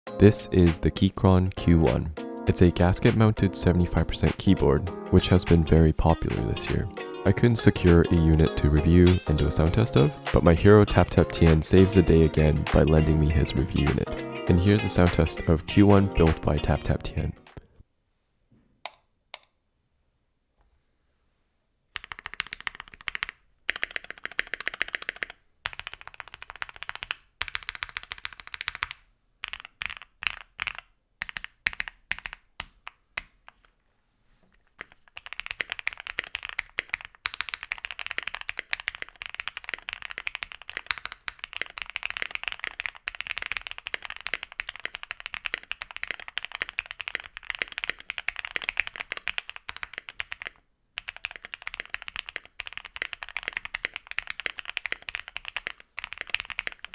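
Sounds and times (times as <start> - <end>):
mechanical keyboard typing: 22.0 - 33.6, 34.8 - 56.9.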